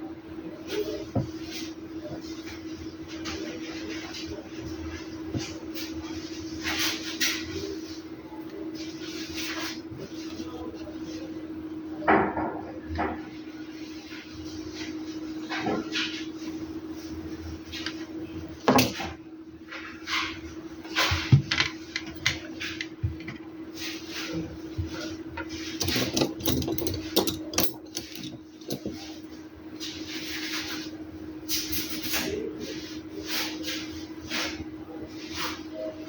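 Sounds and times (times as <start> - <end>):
objects handled on work surface: 20.9 - 29.2.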